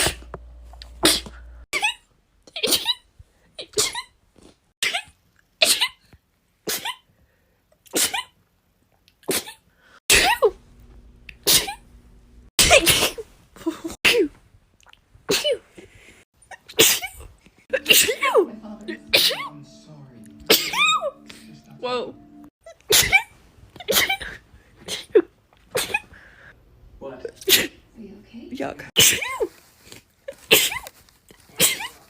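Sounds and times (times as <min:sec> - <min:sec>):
person sneezing: 0:00.9 - 0:01.6, 0:06.6 - 0:07.0, 0:07.9 - 0:08.3, 0:09.2 - 0:10.5, 0:11.4 - 0:11.8, 0:12.6 - 0:14.4, 0:16.7 - 0:18.4, 0:19.1 - 0:19.5, 0:22.9 - 0:26.1, 0:29.0 - 0:29.5, 0:31.5 - 0:32.0.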